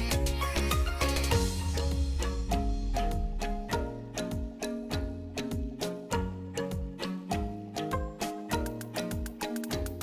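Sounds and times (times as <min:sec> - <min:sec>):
background music with plucked melody: 0:00.0 - 0:10.0
low drum beat: 0:01.3 - 0:05.8.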